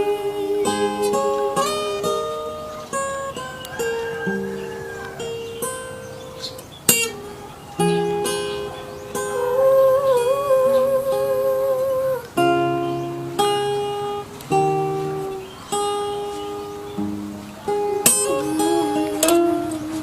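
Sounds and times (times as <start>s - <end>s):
person singing with vibrato: 0.0s - 2.7s, 9.2s - 12.8s, 18.1s - 20.0s
acoustic guitar strumming chords: 0.0s - 20.0s.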